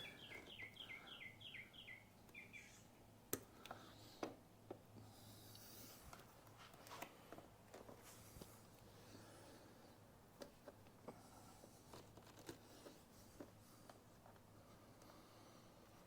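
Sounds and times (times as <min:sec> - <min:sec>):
small bird chirping: 0:00.0 - 0:02.9.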